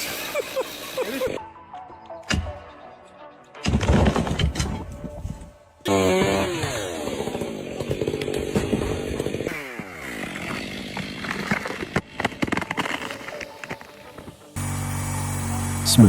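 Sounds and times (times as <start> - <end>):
chainsaw cutting wood: 5.9 - 16.0.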